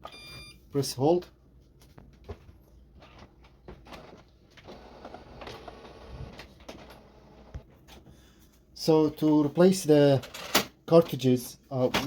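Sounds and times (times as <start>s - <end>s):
printer mechanical whirring: 3.9s - 7.6s.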